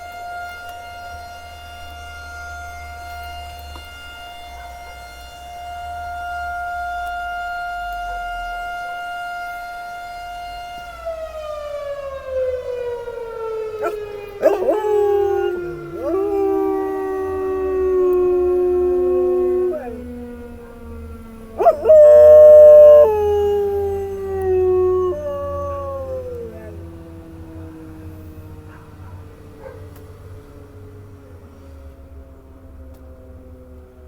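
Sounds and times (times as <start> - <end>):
siren tone winding down: 11.7 - 27.6
dog howling: 13.7 - 26.9.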